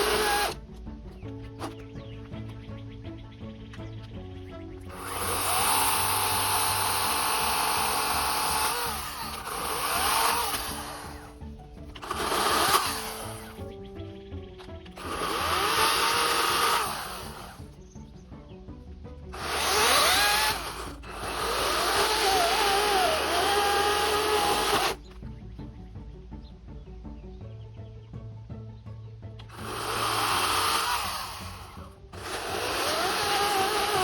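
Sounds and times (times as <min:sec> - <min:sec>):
electric chainsaw cutting wood: 0:00.0 - 0:00.6, 0:01.6 - 0:01.8, 0:04.9 - 0:13.6, 0:15.0 - 0:17.8, 0:19.3 - 0:25.0, 0:29.5 - 0:34.0
background music: 0:00.0 - 0:34.0.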